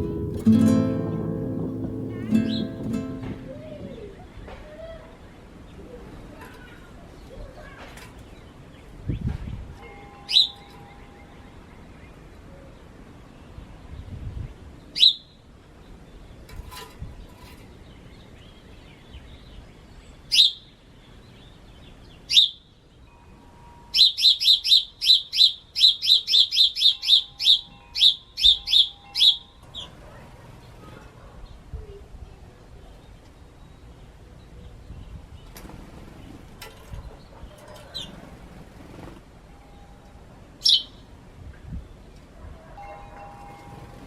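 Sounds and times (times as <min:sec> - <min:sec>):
bird chirping: 0:00.0 - 0:04.6, 0:10.3 - 0:12.2, 0:14.9 - 0:15.4, 0:17.8 - 0:31.0, 0:40.6 - 0:41.1.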